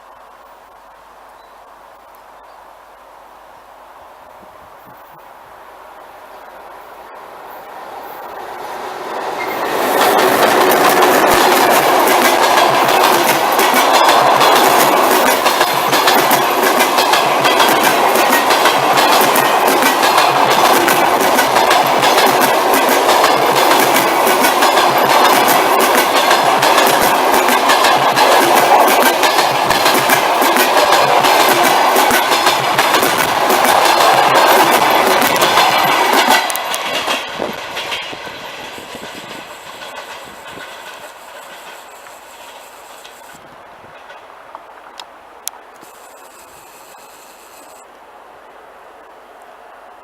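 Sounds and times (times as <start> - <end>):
train rumble: 0.0 - 50.0
train wheels clattering: 9.0 - 44.3.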